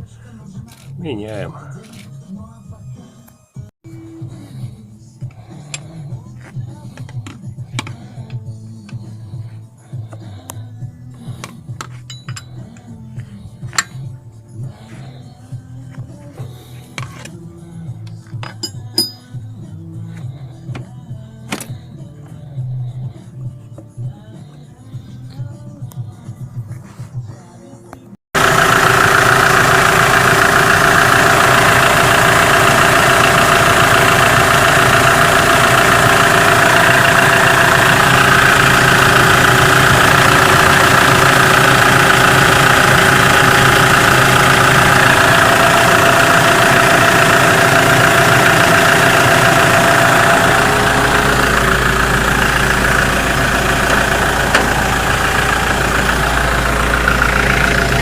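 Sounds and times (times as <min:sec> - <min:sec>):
diesel engine idling: 0:28.4 - 0:58.0.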